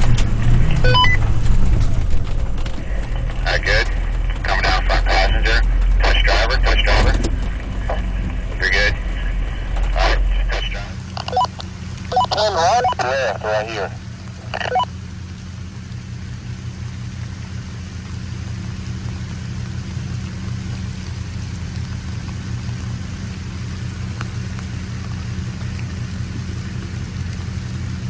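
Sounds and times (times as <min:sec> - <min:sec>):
truck engine running at low revs: 0:00.0 - 0:28.0
rain hissing: 0:10.3 - 0:28.0.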